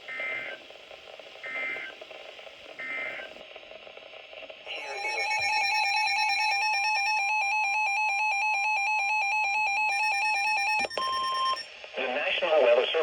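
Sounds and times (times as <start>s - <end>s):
electronic two-tone alert: 4.7s - 11.7s.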